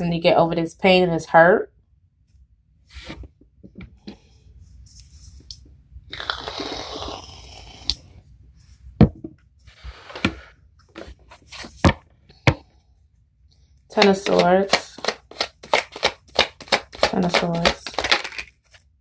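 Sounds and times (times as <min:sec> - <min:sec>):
cards rustling while shuffled: 0:13.9 - 0:18.9
cards snapping and tapping: 0:14.0 - 0:18.8.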